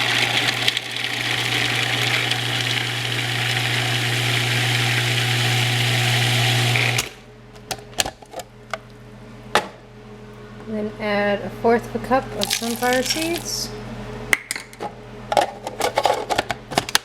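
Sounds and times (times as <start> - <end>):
food processor grinding: 0.0 - 7.2.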